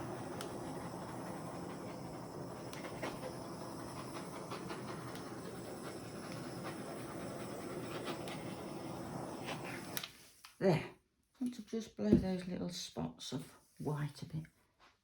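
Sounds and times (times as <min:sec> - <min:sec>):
hairdryer running: 0:00.0 - 0:10.1.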